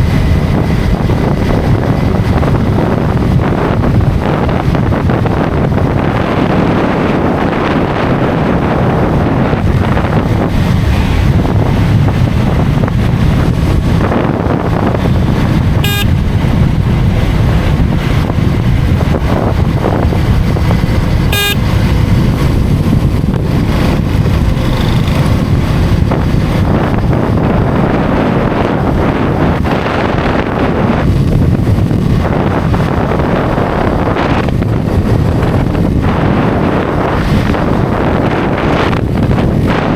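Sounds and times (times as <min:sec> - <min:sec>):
motorcycle engine: 0:00.0 - 0:39.9
road noise: 0:00.0 - 0:39.9
wind rushing over microphone: 0:00.0 - 0:39.9
vehicle horn toots: 0:15.8 - 0:16.2, 0:21.3 - 0:21.9.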